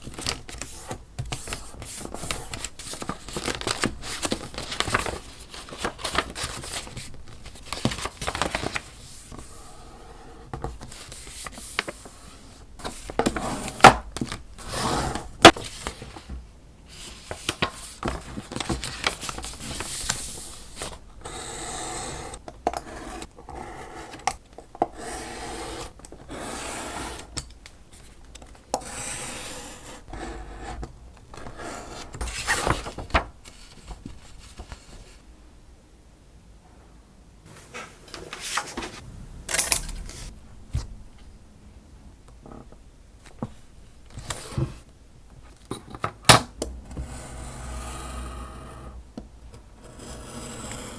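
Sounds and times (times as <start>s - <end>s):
paper rustling and scraping: 0.0s - 9.8s, 10.6s - 21.0s, 30.8s - 35.2s, 37.5s - 40.3s.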